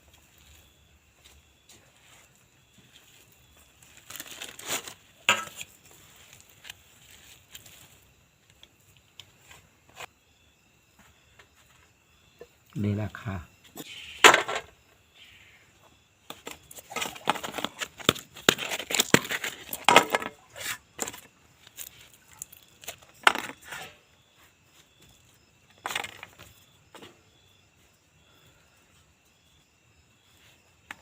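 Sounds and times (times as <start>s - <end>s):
faint insect chirps: 0.0s - 18.5s, 19.3s - 31.0s
objects clinking and knocking: 5.2s - 5.7s, 14.2s - 14.7s, 16.3s - 21.3s, 23.0s - 23.9s, 25.8s - 26.5s.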